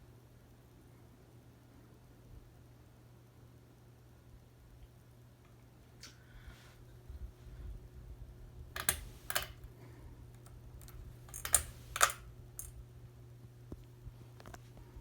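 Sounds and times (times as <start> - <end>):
ceiling fan motor humming: 0.0 - 15.0
sharp clicks: 8.8 - 9.6.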